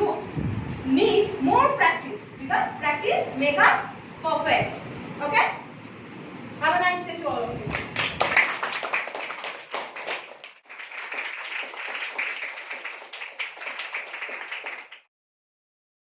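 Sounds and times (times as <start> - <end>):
group clapping: 7.7 - 15.1.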